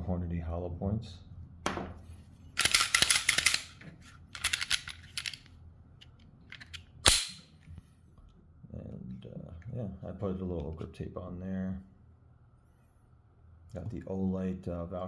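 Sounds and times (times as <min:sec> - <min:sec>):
pistol clicks: 0:02.6 - 0:03.8, 0:06.6 - 0:07.5
pistol sharp snap: 0:07.0 - 0:07.5.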